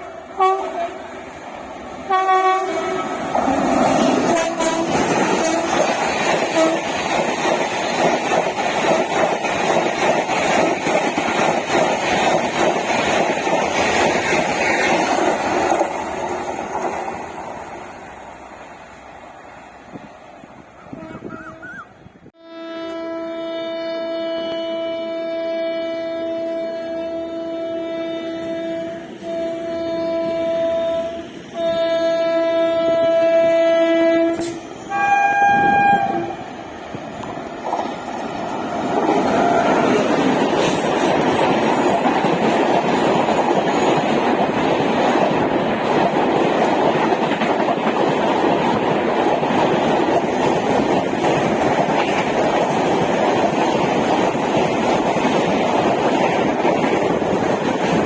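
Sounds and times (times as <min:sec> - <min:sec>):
train horn blast: 0:00.0 - 0:01.1, 0:02.0 - 0:05.9, 0:06.5 - 0:06.9, 0:20.9 - 0:21.8, 0:22.4 - 0:36.5
train wheels clattering over rails: 0:03.2 - 0:17.6, 0:36.9 - 0:58.0.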